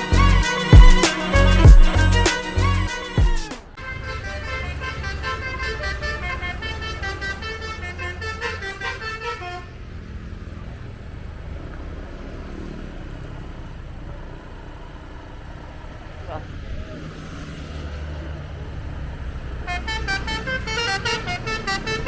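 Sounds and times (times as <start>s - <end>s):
bus horn playing a quick melody: 0.0s - 9.9s, 19.6s - 22.0s
vehicle rumble and road noise: 0.0s - 22.0s.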